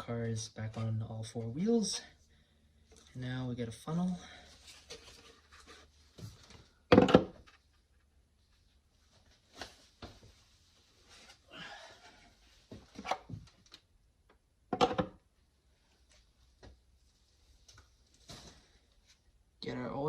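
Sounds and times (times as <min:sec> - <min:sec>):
knocks and clatter of objects: 0:06.9 - 0:07.6, 0:14.7 - 0:15.2.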